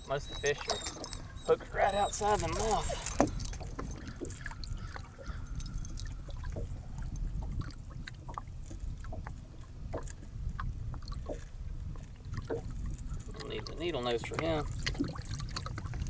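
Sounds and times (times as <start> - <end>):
light water sounds: 0.0 - 16.0.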